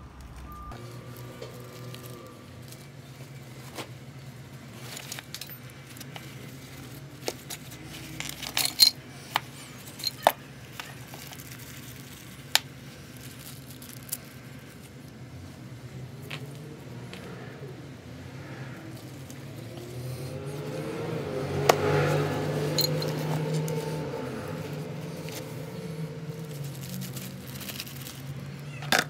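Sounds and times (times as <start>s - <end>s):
hard objects clicking and clinking: 4.8s - 15.0s, 21.6s - 25.6s.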